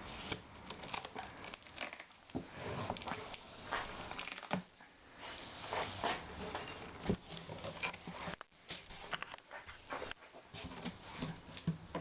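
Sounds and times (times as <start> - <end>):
packaging rustling and crinkling: 0.0 - 4.8.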